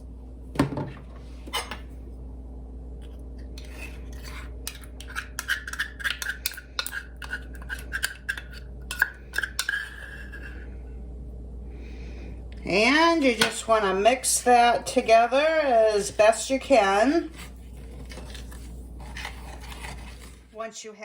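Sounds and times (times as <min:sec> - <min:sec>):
utensil scraping a dish: 0:03.6 - 0:10.8, 0:12.8 - 0:20.6.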